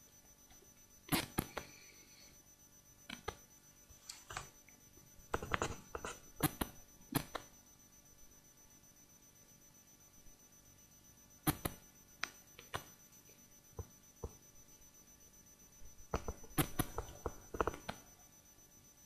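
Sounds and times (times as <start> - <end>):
faint high-pitched whine: 0.0 - 19.0
sharp clicks and light knocks: 16.1 - 18.0.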